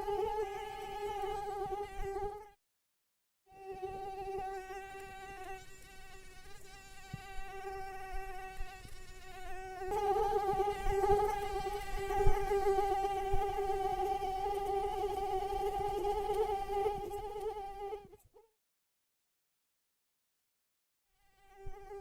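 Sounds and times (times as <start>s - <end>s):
mosquito wings whining: 5.2s - 18.2s.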